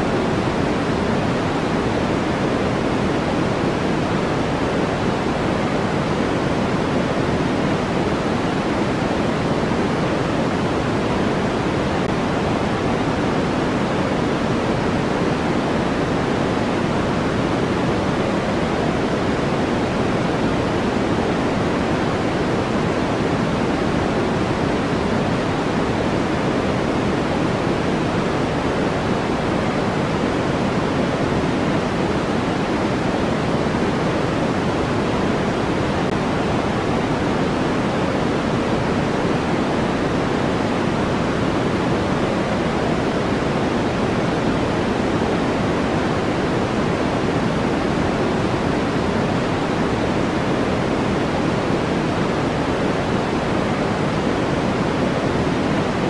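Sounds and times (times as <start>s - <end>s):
white noise hiss: 0.0s - 56.0s.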